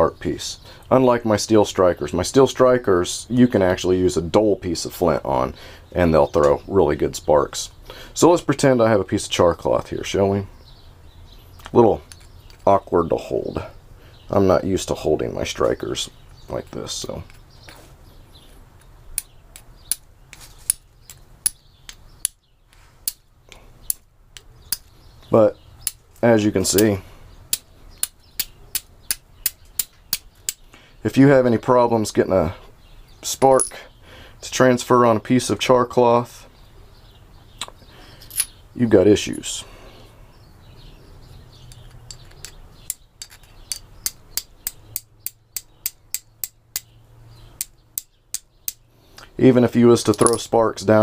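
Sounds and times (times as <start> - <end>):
flint striking steel: 19.1 - 22.4, 23.0 - 24.9, 25.8 - 26.0, 27.5 - 30.7, 38.2 - 38.6, 41.7 - 47.0, 47.6 - 48.9.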